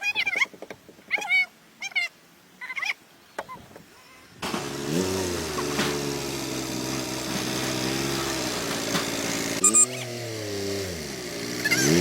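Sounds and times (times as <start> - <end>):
engine running: 4.4 - 12.0.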